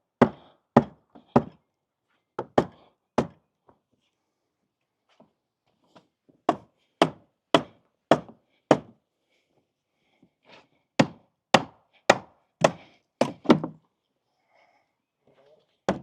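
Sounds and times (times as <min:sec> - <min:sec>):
hammer blows on wooden boards: 0:00.2 - 0:01.6, 0:02.4 - 0:03.4, 0:06.5 - 0:09.0, 0:11.0 - 0:13.8.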